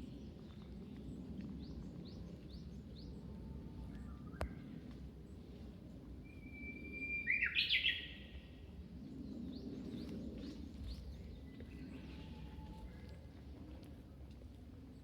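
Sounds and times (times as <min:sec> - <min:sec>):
bird singing whistled song: 0:06.4 - 0:08.2.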